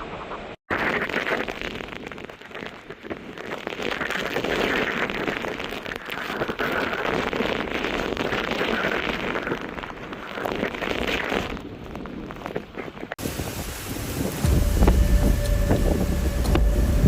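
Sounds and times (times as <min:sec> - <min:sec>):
hurricane wind: 0:00.0 - 0:17.0
heavy rain: 0:13.2 - 0:17.0.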